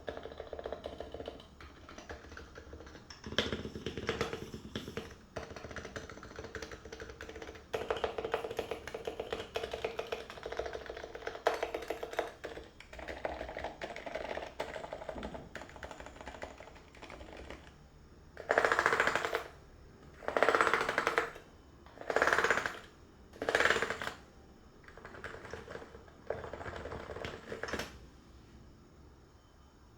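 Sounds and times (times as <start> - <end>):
keyboard typing: 0.0 - 17.8, 18.4 - 28.0.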